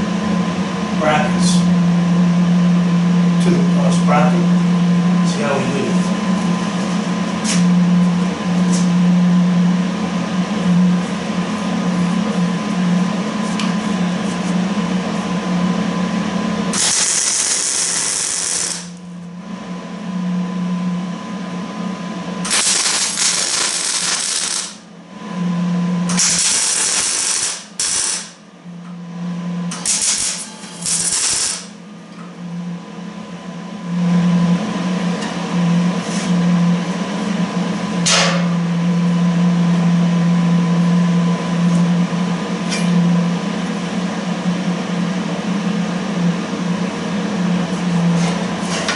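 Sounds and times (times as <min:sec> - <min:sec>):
steady hum: 0:00.0 - 0:48.9
crackling weld bursts: 0:16.7 - 0:19.0, 0:22.4 - 0:24.8, 0:26.1 - 0:28.4, 0:29.7 - 0:31.8.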